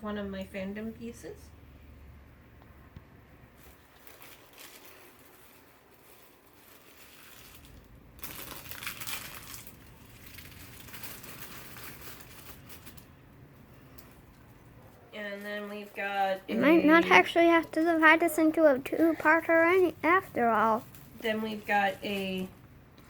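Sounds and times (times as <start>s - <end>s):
plastic packaging rustling: 3.6s - 13.2s, 19.2s - 22.5s.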